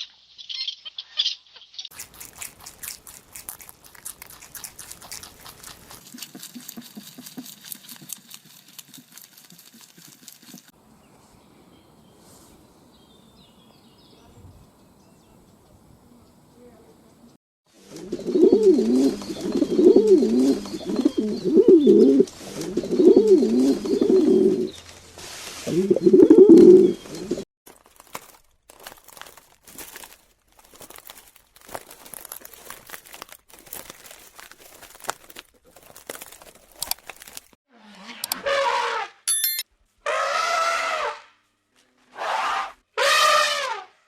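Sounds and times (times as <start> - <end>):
bird cooing: 17.8 - 24.8, 25.7 - 27.4.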